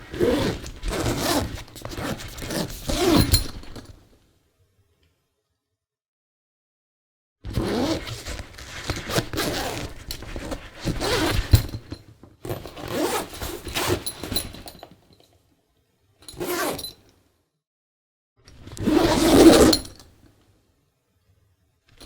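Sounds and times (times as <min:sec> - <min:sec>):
zipper zipping: 0:00.1 - 0:03.4, 0:07.5 - 0:14.6, 0:16.3 - 0:17.0, 0:18.8 - 0:19.9.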